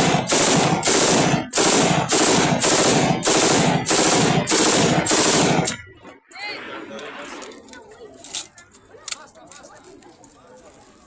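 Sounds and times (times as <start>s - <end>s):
automatic rifle fire in bursts: 0.0s - 5.8s.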